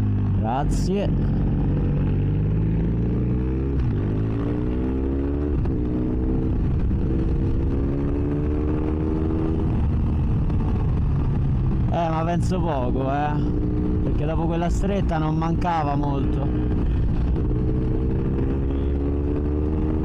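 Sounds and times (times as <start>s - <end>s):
motorcycle engine revving: 0.0s - 20.0s
wind noise: 3.6s - 15.6s.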